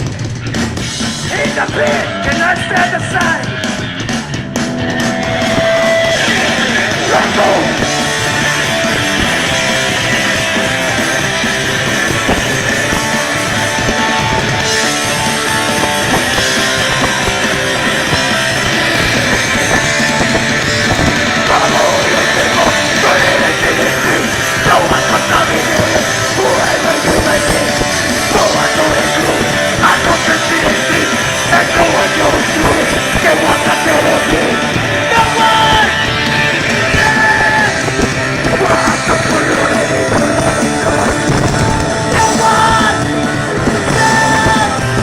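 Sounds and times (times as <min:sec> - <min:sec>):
punk rock band playing: 0:00.0 - 0:45.0
shouted singing: 0:05.1 - 0:11.3, 0:15.4 - 0:45.0.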